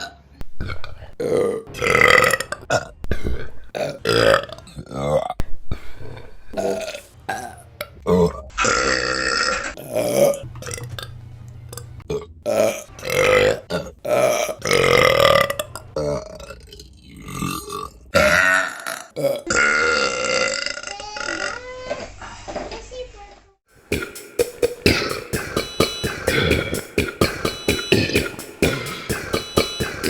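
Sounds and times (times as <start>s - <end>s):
woman burping loudly: 17.5s - 20.9s.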